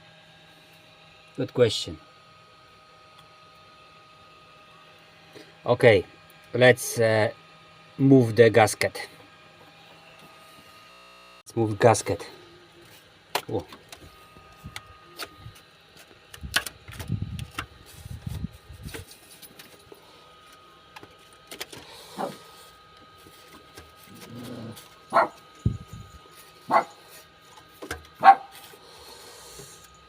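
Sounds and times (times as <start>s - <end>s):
dog barking: 22.2s - 22.4s, 25.1s - 25.4s, 26.7s - 27.0s, 28.2s - 28.5s.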